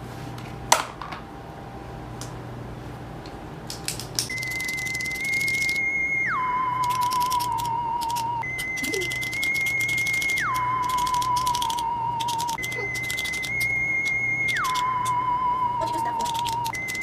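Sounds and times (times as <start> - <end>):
electronic whistle tone: 4.3 - 17.0
fast ticking: 6.8 - 15.2, 15.8 - 17.0.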